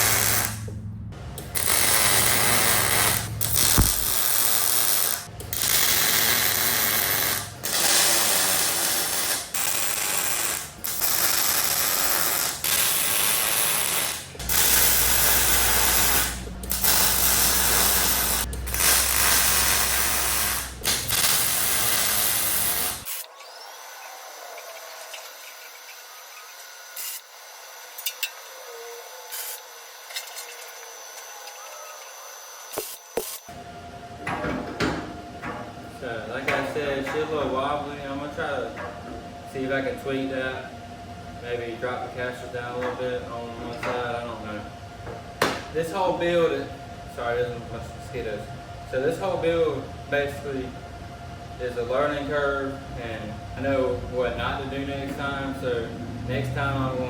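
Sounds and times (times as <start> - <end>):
arc welding crackle: 0.0 - 0.8, 1.4 - 23.3, 25.0 - 28.3, 29.2 - 33.5.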